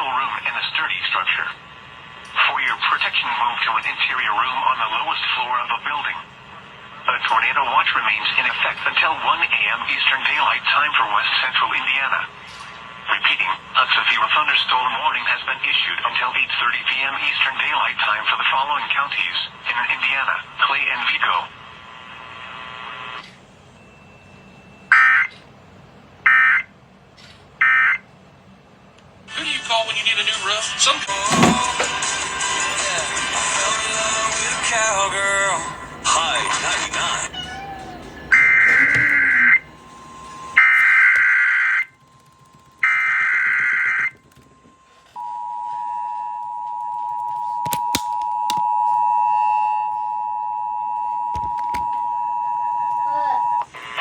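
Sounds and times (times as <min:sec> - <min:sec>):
steady two-tone alert signal: 0:31.1 - 0:47.6.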